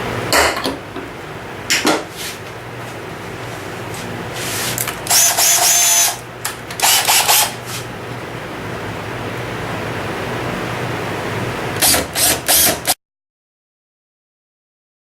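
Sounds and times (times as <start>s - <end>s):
motor humming: 3.7s - 13.0s
power tool cutting wood: 5.0s - 6.2s, 6.8s - 7.6s, 11.8s - 13.0s.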